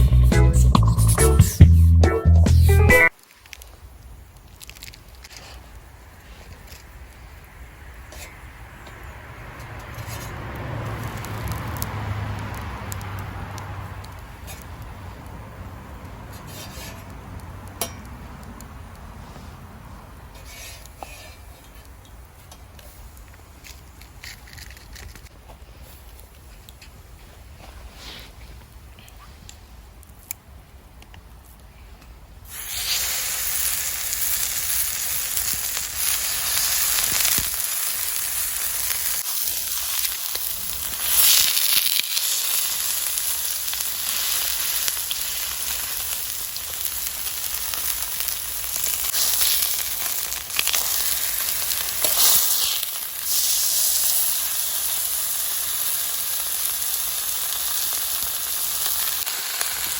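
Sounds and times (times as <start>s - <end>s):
steak sizzling on a griddle: 32.5s - 59.9s.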